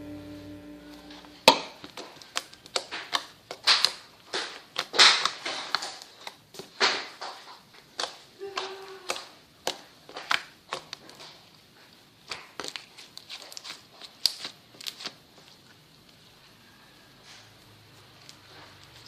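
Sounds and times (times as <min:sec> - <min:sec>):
held music chord: 0:00.0 - 0:01.6
slime popping and crackling: 0:01.4 - 0:16.2.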